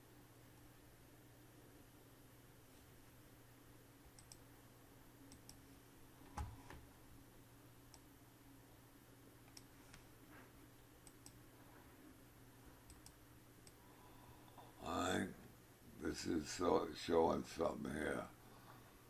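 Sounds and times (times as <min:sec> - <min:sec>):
faint computer mouse clicks: 0:04.1 - 0:04.4, 0:05.3 - 0:05.6, 0:09.5 - 0:10.0, 0:11.0 - 0:11.4, 0:12.9 - 0:13.8.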